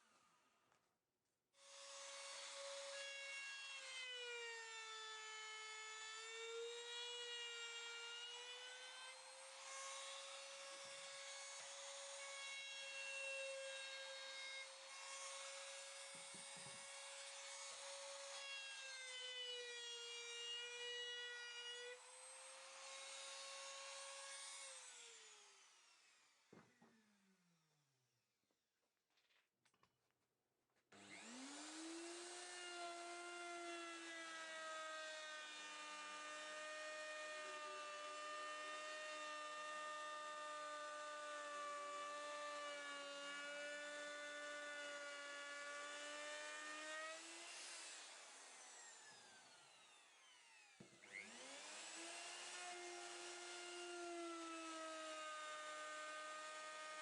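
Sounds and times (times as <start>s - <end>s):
power tool motor whining: 31.0s - 33.0s, 35.5s - 57.0s
power tool winding down: 31.0s - 57.0s.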